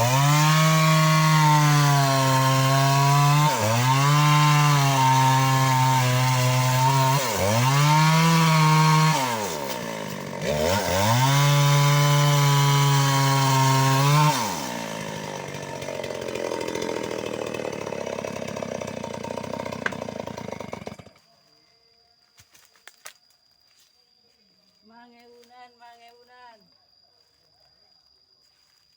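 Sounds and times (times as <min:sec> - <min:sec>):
chainsaw cutting wood: 0:00.0 - 0:21.2.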